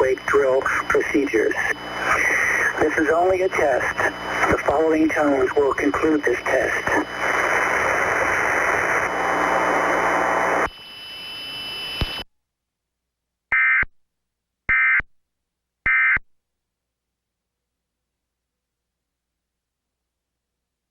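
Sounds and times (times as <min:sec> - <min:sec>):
radio static hiss: 0:00.0 - 0:12.2.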